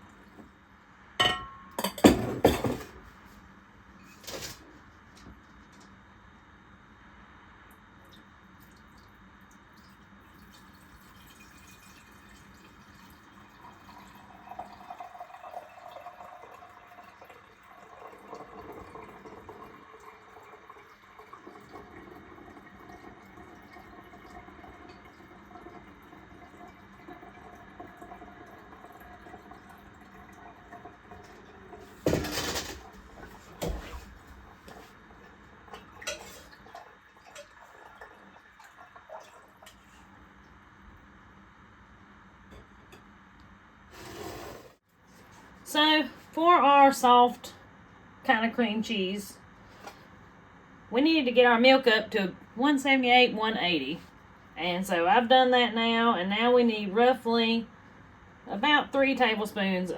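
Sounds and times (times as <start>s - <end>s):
milk trickling through filter: 7.7s - 40.6s.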